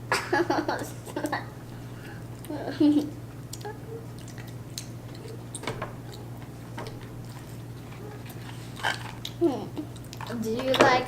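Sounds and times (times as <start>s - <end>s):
steady low hum: 0.0s - 11.0s
wet chewing clicks and smacks: 2.0s - 10.8s.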